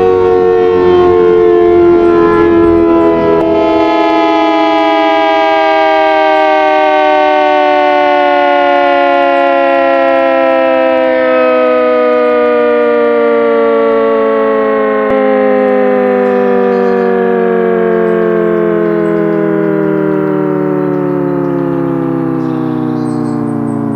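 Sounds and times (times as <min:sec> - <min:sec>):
warning siren winding down: 0:00.0 - 0:23.9.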